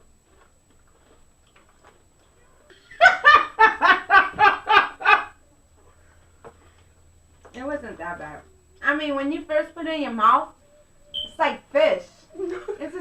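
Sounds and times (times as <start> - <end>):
person laughing out loud: 2.8 - 5.4.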